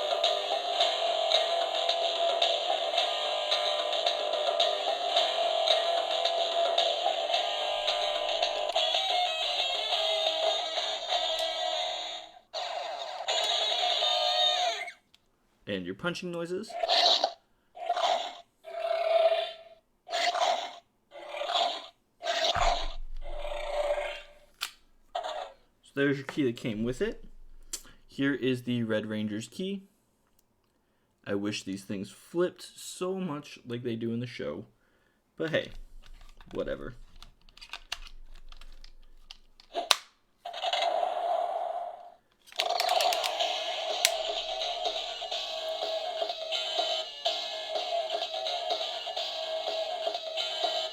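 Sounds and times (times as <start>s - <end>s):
electronic toy sound effects: 0.0s - 15.0s, 20.2s - 24.4s, 39.7s - 50.9s
toy punch sound effects: 22.5s - 24.4s, 42.5s - 47.9s
plastic toy clicks and snap: 24.5s - 24.8s, 35.6s - 40.2s, 42.3s - 44.9s.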